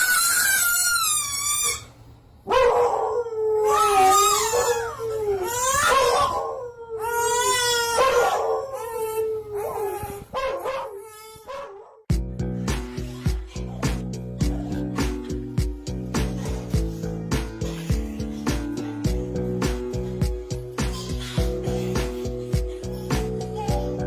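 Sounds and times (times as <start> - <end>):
dog howling: 2.5 - 12.0.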